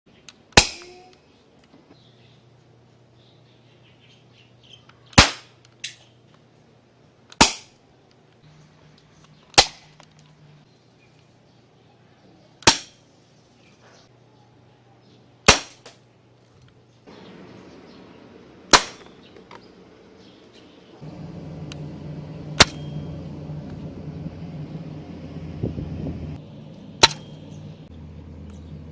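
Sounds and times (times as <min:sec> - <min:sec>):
air pistol shots: 0:00.5 - 0:01.0, 0:05.2 - 0:06.0, 0:07.4 - 0:07.8, 0:12.6 - 0:13.0, 0:15.5 - 0:16.0, 0:18.7 - 0:19.2, 0:27.0 - 0:27.3
air pistol shot: 0:05.2 - 0:05.5, 0:07.4 - 0:07.7, 0:18.7 - 0:19.2, 0:27.0 - 0:27.3
steady low hum: 0:16.2 - 0:28.9.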